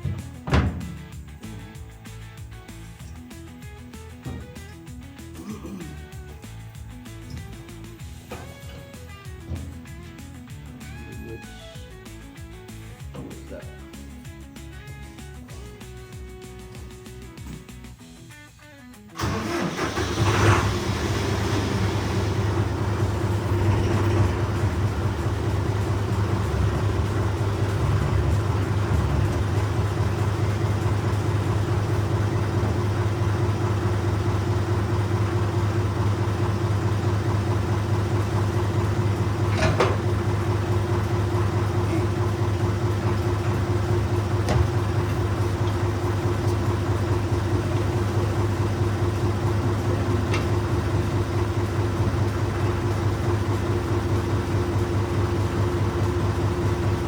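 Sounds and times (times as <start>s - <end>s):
short knocks: 0.0s - 1.2s, 7.3s - 10.0s
tractor engine running: 0.0s - 18.1s, 19.2s - 57.0s.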